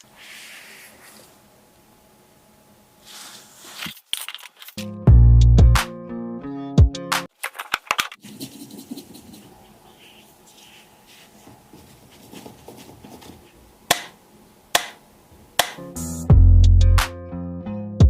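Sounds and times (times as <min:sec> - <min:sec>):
music: 0:04.8 - 0:07.3, 0:15.6 - 0:18.0.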